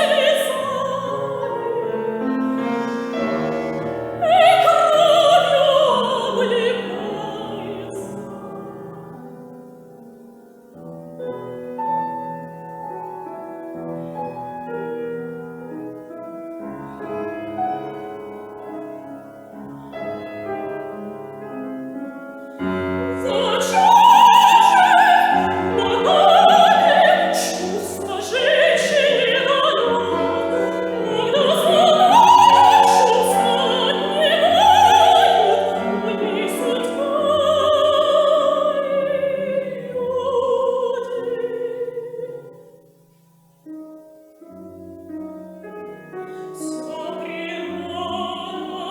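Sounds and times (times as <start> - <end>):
soprano singing with vibrato: 0.0 - 9.5, 22.5 - 42.7, 46.3 - 48.9
piano accompaniment: 0.0 - 48.9.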